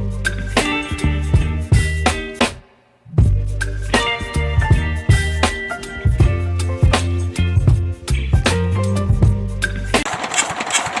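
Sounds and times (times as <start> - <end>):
music with bass and drum beat: 0.0 - 10.1
engine running with clatter: 10.0 - 11.0.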